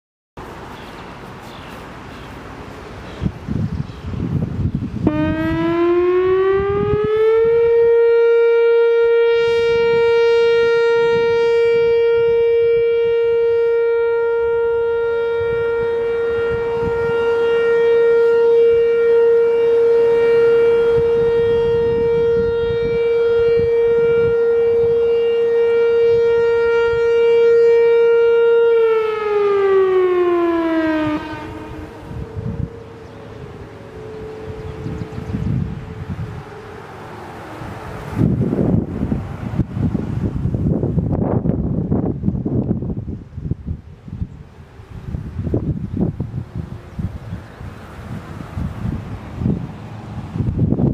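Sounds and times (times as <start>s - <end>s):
outdoor warning siren: 0.4s - 50.9s.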